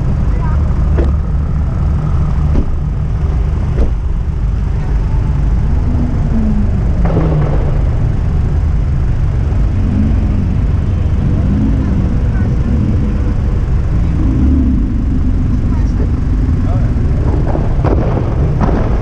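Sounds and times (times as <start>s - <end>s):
car engine rumbling: 0.0s - 19.0s
sharp cracks: 6.9s - 9.8s, 17.1s - 19.0s.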